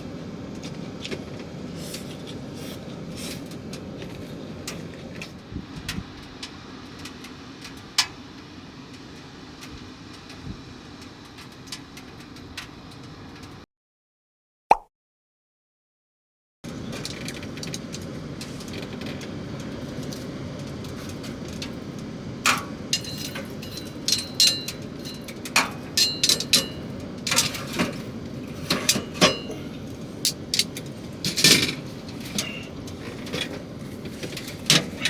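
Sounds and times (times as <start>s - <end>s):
metal cookware clinking: 23.0s - 27.9s, 28.7s - 29.7s.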